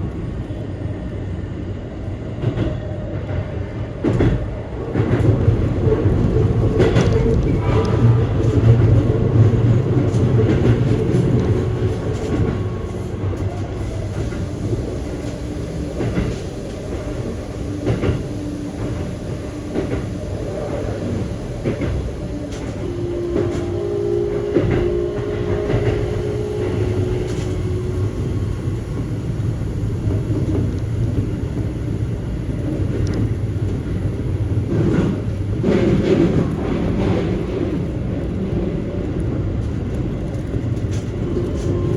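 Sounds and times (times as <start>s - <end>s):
train wheels rumbling on track: 0.0s - 41.9s
rail joint clicks: 2.0s - 41.9s.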